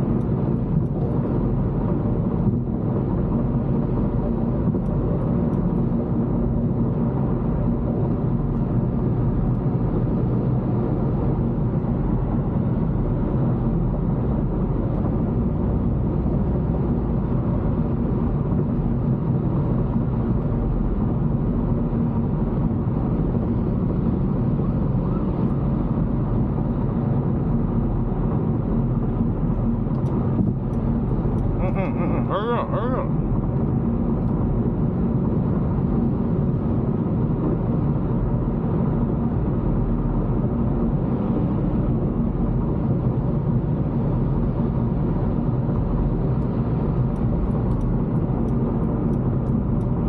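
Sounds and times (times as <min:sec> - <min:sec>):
car engine and road rumble: 0:00.0 - 0:50.0.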